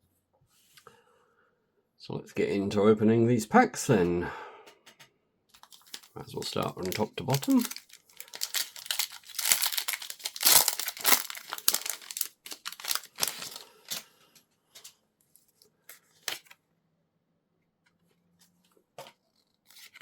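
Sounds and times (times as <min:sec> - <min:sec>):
foil pack tearing and crinkling: 0:05.6 - 0:14.1.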